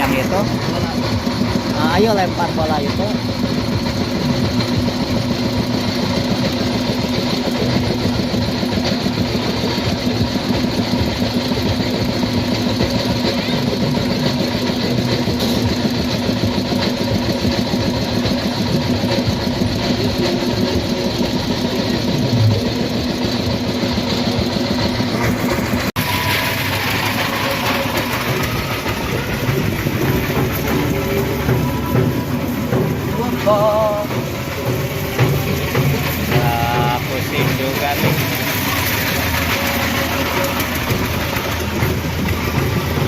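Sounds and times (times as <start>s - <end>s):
engine running steadily: 0.0s - 43.0s.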